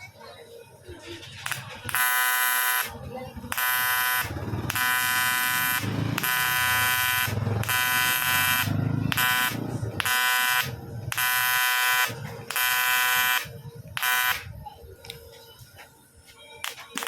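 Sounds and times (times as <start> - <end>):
welding arc buzzing: 1.4 - 2.9, 3.5 - 14.4.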